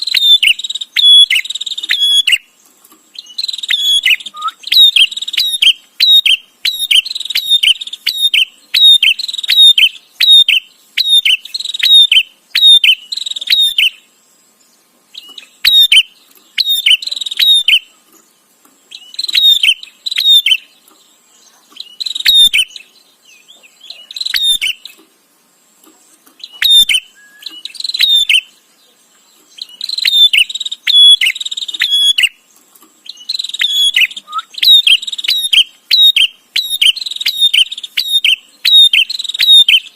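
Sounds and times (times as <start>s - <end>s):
bird chirping in scratchy bursts: 0.0s - 39.9s.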